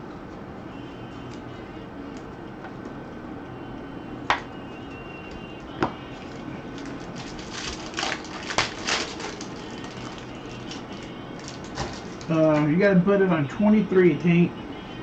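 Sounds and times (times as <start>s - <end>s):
faint background hum: 0.0s - 15.0s
trading cards clicking and rustling: 4.8s - 12.7s.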